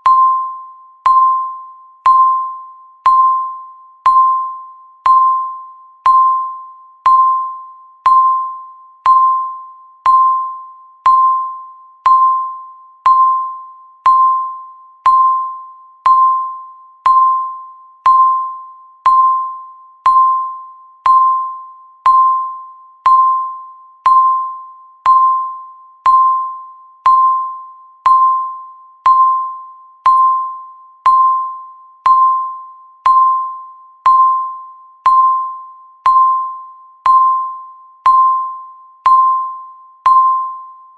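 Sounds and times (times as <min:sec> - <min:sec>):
timer beep with click: 0:00.0 - 0:40.9.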